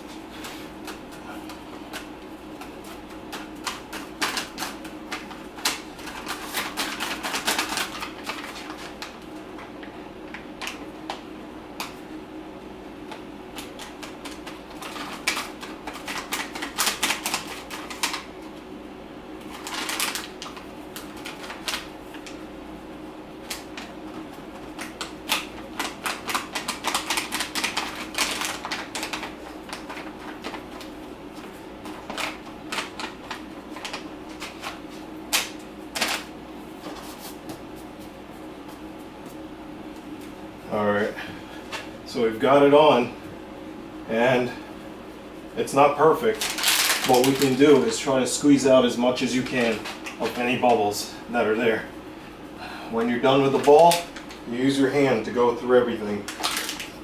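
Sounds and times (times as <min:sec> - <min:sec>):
rubber pad clicking and crackling: 0:24.8 - 0:30.9.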